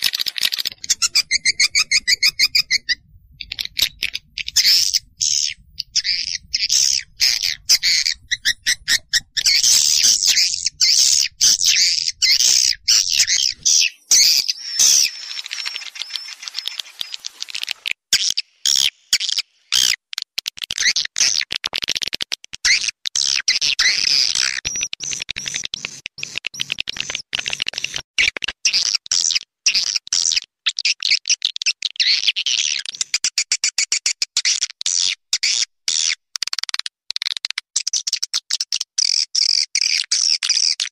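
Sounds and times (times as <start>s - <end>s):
swiftlets twittering: 12.5s - 18.0s.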